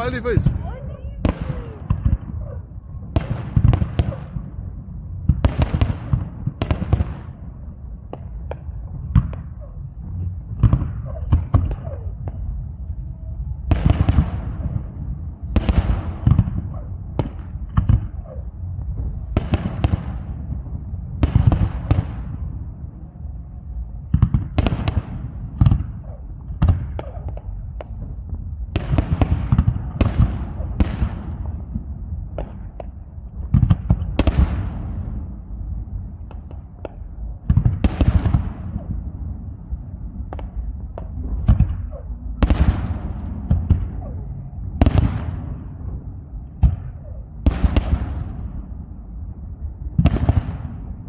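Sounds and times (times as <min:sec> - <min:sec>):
fireworks bursting: 0:00.0 - 0:00.5.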